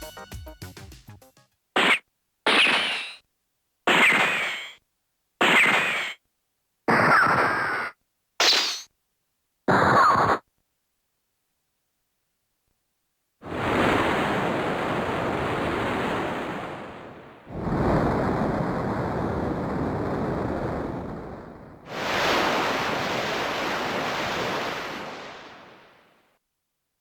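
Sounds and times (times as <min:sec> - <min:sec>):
rushing noise bursts: 0:13.5 - 0:26.0.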